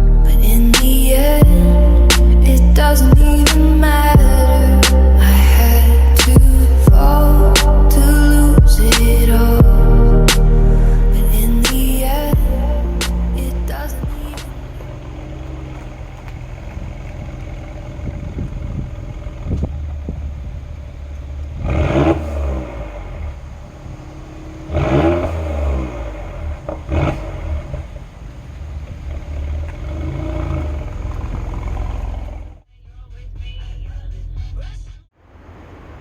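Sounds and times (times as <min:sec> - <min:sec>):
car engine rumbling and revving: 0:00.0 - 0:36.0
exhaust pop: 0:00.6 - 0:05.6, 0:06.2 - 0:28.1.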